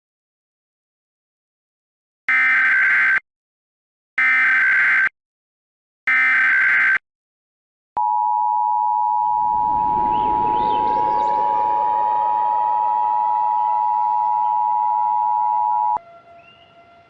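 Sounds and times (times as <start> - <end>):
two-tone attention signal: 8.0 - 16.0
warbling data tones: 8.8 - 16.0
rising sound: 9.0 - 16.0.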